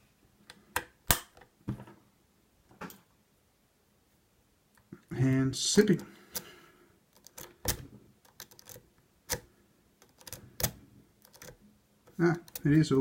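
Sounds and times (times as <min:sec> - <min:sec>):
lock pick clicking on pins: 0:07.1 - 0:12.7.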